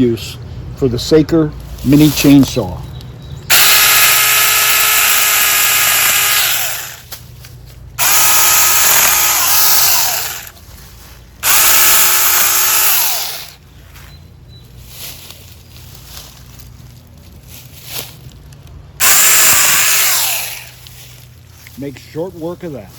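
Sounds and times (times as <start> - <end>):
cordless chainsaw cutting wood: 3.5 - 7.1, 8.0 - 10.6, 11.4 - 13.6, 19.0 - 20.8.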